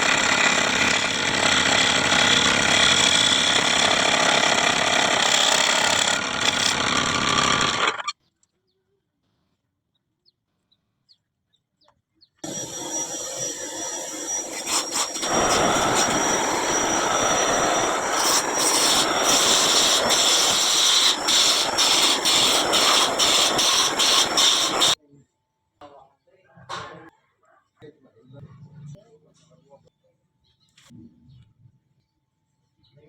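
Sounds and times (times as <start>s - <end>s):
small power tool whining on wood: 0.0s - 8.1s, 12.4s - 25.0s.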